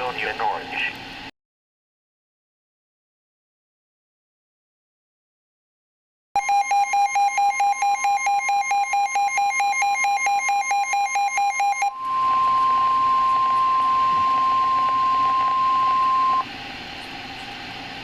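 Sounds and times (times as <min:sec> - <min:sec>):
radio hiss: 0:00.0 - 0:01.0
rapid pulsing beeps: 0:06.4 - 0:16.4
steady high alarm tone: 0:06.4 - 0:16.5.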